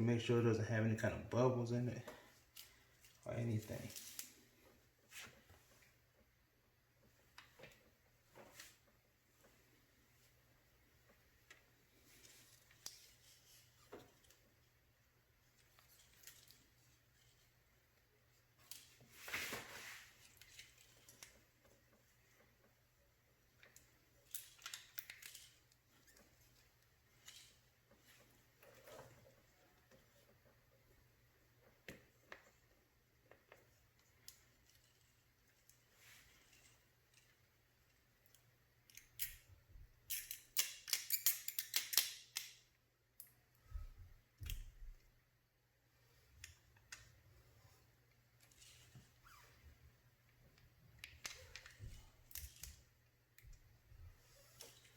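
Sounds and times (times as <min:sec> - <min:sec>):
tape scraping rustle: 0:02.5 - 0:05.5, 0:18.6 - 0:22.0, 0:23.7 - 0:30.3, 0:47.4 - 0:49.8, 0:54.1 - 0:54.9.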